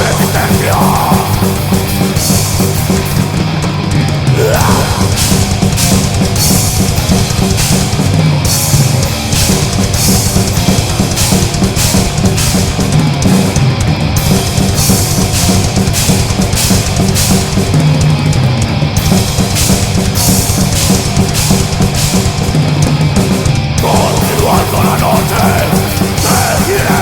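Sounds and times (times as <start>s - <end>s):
heavy metal band playing: 0.0s - 27.0s
cymbal crashes: 4.8s - 8.2s.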